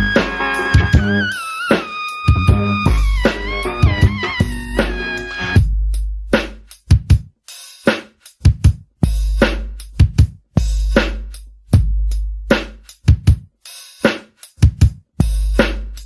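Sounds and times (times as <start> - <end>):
hi-hats: 0.0 - 16.0
booming bass kicks: 2.3 - 5.9.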